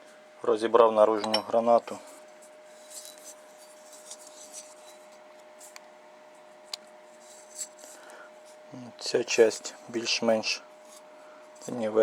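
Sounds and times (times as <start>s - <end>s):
faint steady hum: 0.0s - 12.0s
metal parts scraping: 2.8s - 5.0s.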